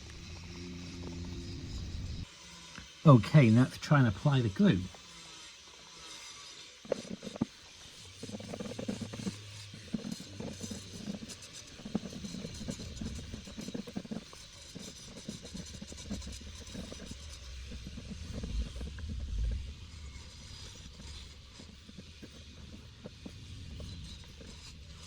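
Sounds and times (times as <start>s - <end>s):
low rumble: 17.3s - 21.5s.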